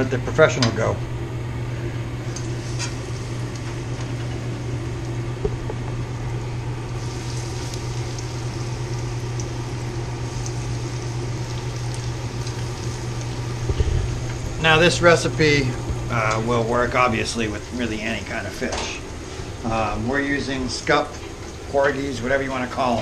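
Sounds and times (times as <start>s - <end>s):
steady low hum: 0.0s - 23.0s
fish sizzling in oil: 6.8s - 19.5s.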